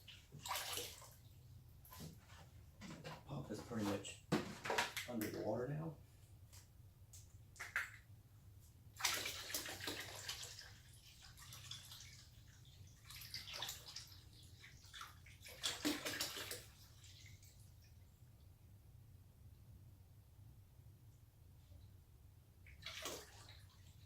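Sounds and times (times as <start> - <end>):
water pouring and splashing into tank: 0.0 - 2.4, 7.6 - 8.1, 8.9 - 18.0, 22.6 - 24.0.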